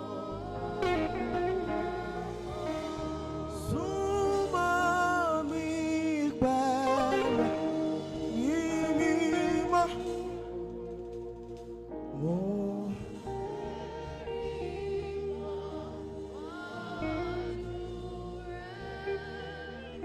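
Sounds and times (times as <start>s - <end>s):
musical backing: 0.0s - 20.0s.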